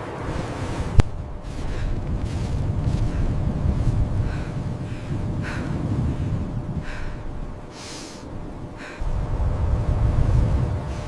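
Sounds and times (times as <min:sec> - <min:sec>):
low wind rumble: 0:00.0 - 0:11.0
breathy puffs: 0:01.4 - 0:09.1.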